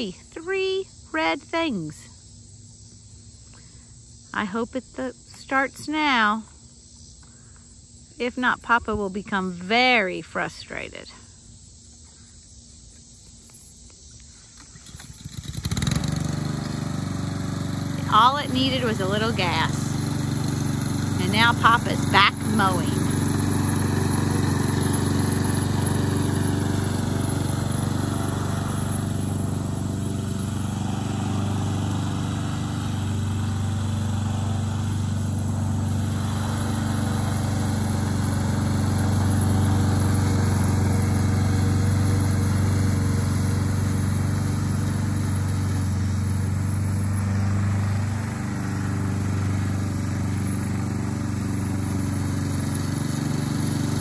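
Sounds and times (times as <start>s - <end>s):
lawn mower engine running: 14.5s - 54.0s.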